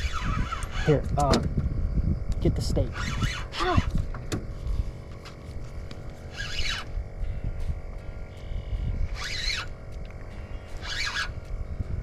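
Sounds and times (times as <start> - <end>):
wind rumble: 0.0 - 12.0
boat noise: 2.9 - 11.6
harsh bird calls: 6.3 - 7.0, 8.4 - 9.8, 10.4 - 11.5.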